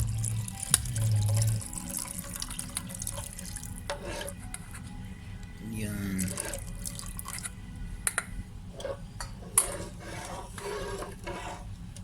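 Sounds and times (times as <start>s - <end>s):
spoon stirring sauce: 0.1s - 4.9s, 6.2s - 7.5s, 8.8s - 11.7s.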